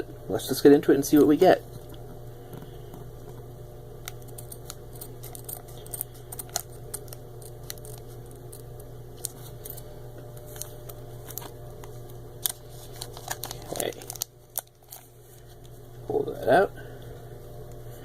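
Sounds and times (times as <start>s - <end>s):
steady low hum: 0.0s - 18.0s
foil wrapper crackling: 12.4s - 15.4s.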